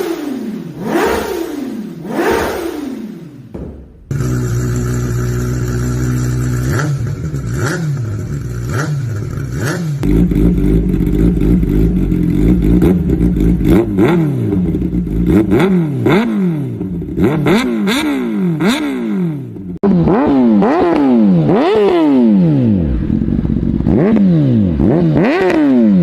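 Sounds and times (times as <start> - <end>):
motorcycle engine idling: 0.0 - 15.5, 22.9 - 23.9
motorcycle engine revving: 0.0 - 26.0.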